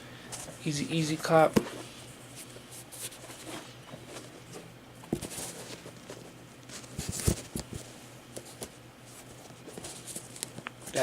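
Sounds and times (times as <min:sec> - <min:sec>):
packaging rustling: 0:02.8 - 0:11.0.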